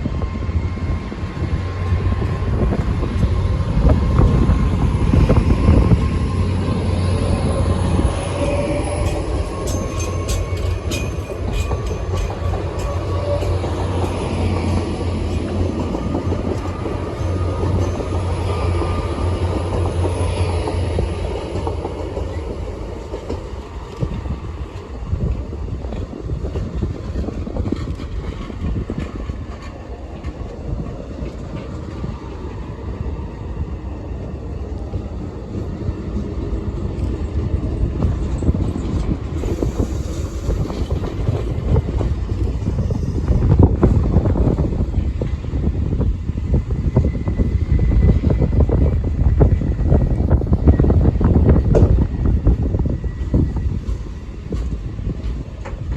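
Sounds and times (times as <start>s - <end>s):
train passing: 0.0s - 55.9s
train wheels clickety-clack: 0.0s - 55.9s.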